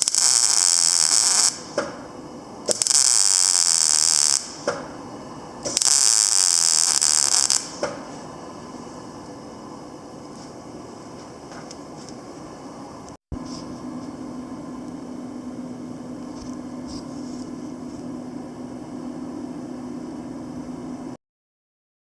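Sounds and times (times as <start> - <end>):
welding arc burning: 0.0 - 8.3
low machine hum: 1.6 - 2.7, 4.4 - 5.8, 7.0 - 21.2.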